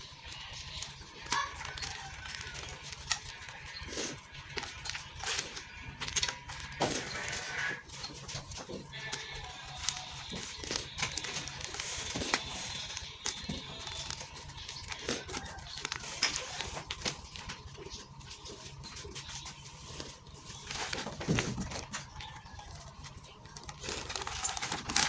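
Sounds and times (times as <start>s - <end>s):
chalk crunching and crackling: 0.0s - 7.7s.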